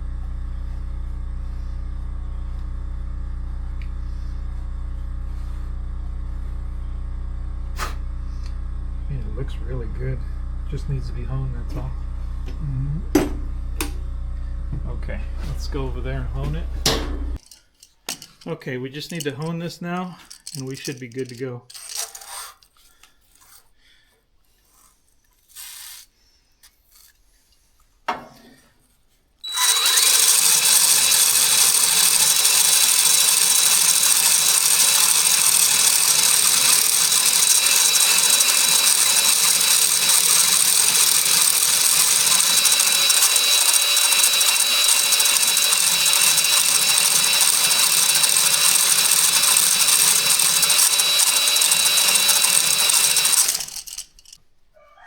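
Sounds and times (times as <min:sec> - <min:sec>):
drill honing with high whine: 0:08.3 - 0:17.4, 0:29.4 - 0:54.4.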